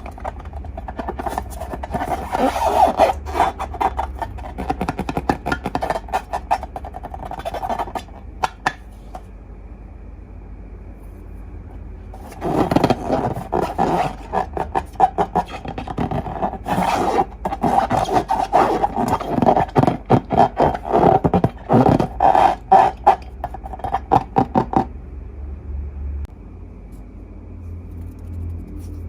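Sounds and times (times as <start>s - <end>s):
slime squelching: 0.0s - 9.2s, 12.2s - 24.8s.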